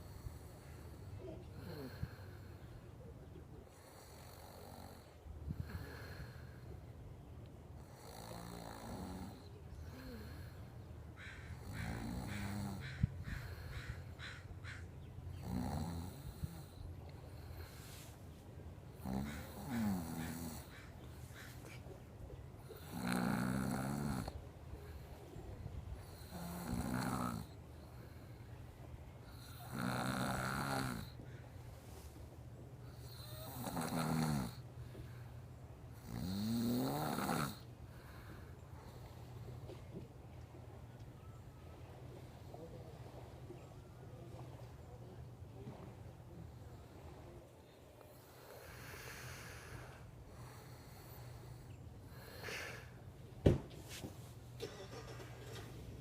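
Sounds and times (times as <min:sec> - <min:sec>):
man snoring: 0:03.8 - 0:06.4, 0:07.8 - 0:10.6, 0:11.6 - 0:12.8, 0:15.4 - 0:16.7, 0:19.0 - 0:20.7, 0:22.7 - 0:24.4, 0:26.1 - 0:27.5, 0:29.3 - 0:31.2, 0:32.9 - 0:34.6, 0:36.0 - 0:37.6
sudden loud thump: 0:53.4 - 0:53.7.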